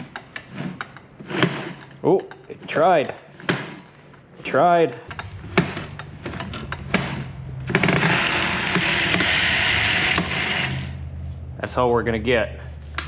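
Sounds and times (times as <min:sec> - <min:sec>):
table saw motor whirring: 0:05.1 - 0:11.1.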